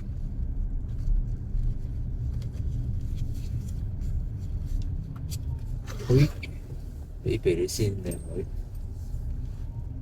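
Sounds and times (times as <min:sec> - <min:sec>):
car engine and tyres rumbling: 0:00.0 - 0:10.0.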